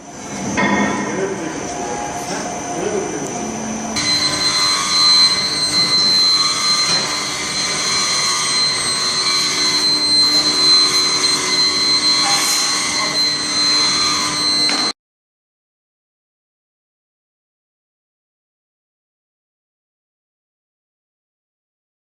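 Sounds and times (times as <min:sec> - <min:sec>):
furnace roaring: 0:00.0 - 0:15.0
high-pitched whine: 0:00.0 - 0:15.0.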